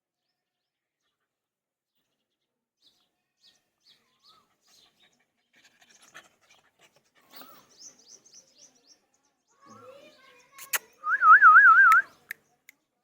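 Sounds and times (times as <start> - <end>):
puppy panting: 4.4 - 8.0.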